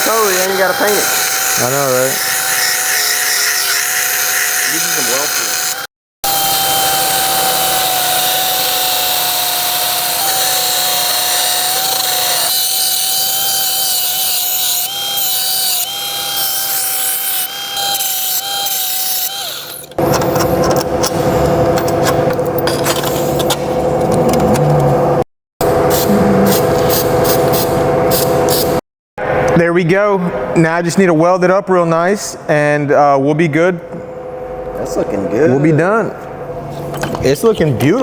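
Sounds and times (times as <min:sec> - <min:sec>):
power tool whining on sheet metal: 0:00.0 - 0:20.2.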